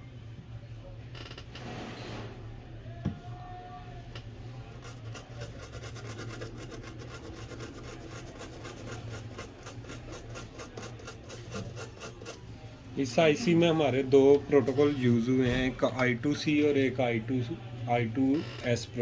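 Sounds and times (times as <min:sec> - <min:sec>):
rhythmic scraping on circuit board: 0:04.5 - 0:12.5.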